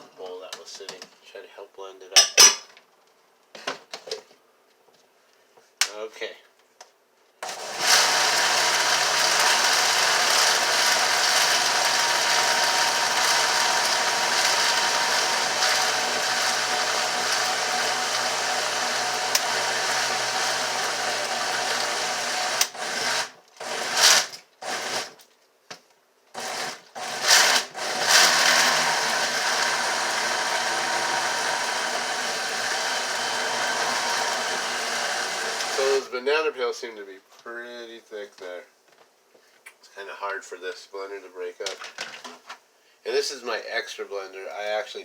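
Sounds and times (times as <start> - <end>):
blender running: 7.4 - 25.2, 26.4 - 36.1.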